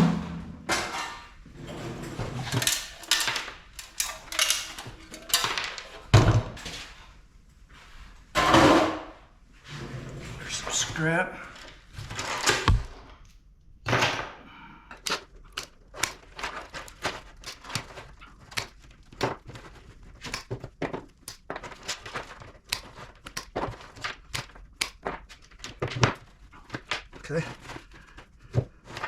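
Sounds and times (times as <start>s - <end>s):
metal scraping and tearing: 0.0s - 6.8s, 15.0s - 28.2s
metal clicks and clinks: 2.5s - 5.9s.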